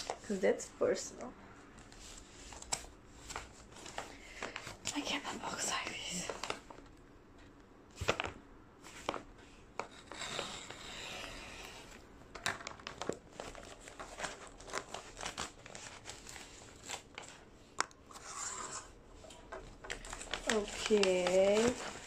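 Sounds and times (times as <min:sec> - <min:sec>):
paper envelope crinkling: 0:08.0 - 0:22.0
paper tearing: 0:09.9 - 0:12.0, 0:20.0 - 0:22.0.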